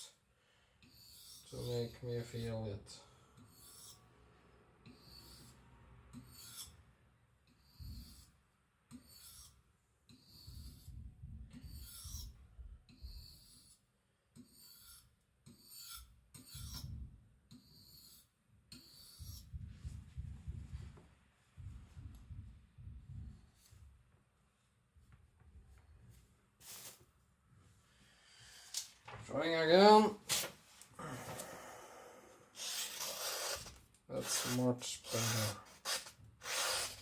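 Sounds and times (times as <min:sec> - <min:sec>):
knife slicing through paper: 0:26.6 - 0:27.0, 0:30.3 - 0:30.6, 0:32.6 - 0:37.0.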